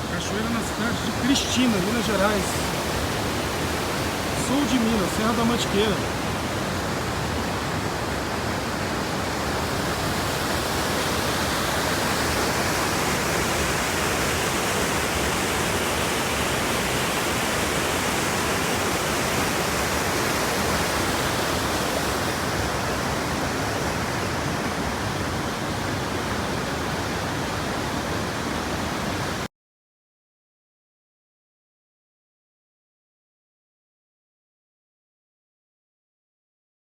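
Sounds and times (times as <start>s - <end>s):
water rushing over rock: 0.0s - 29.5s.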